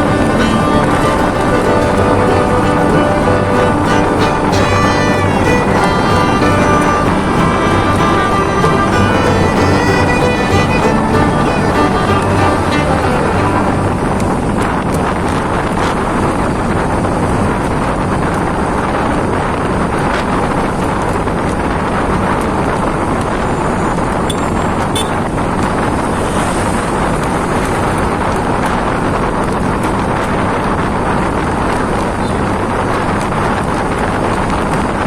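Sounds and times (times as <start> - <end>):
heavy rain pouring: 0.0 - 24.2.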